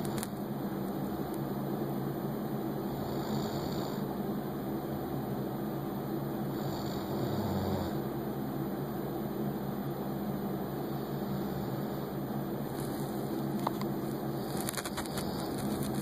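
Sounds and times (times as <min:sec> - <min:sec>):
steady background hum: 0:00.0 - 0:16.0
person snoring faintly: 0:03.0 - 0:04.0, 0:06.5 - 0:08.0.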